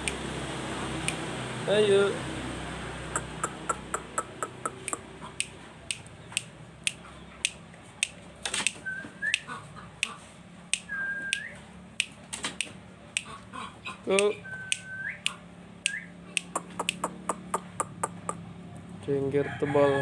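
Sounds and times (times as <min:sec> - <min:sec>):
sharp clicks: 0:00.0 - 0:00.2, 0:03.2 - 0:09.4, 0:10.0 - 0:13.4, 0:14.1 - 0:18.4.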